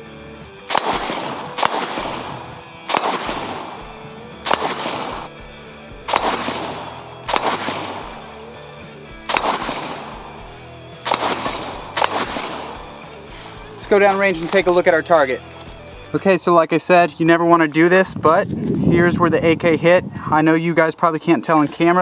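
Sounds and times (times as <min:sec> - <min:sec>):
rifle shots: 0:00.6 - 0:15.8.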